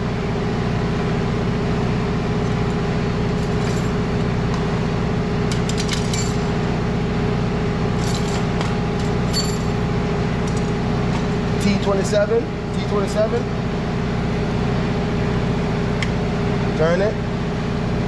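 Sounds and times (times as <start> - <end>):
low mechanical drone: 0.0 - 18.0.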